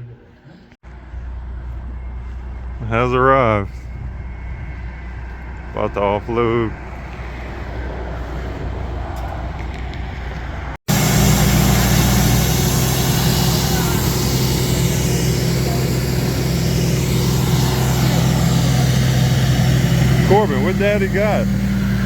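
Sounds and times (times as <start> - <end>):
diesel truck engine idling: 10.9 - 22.0.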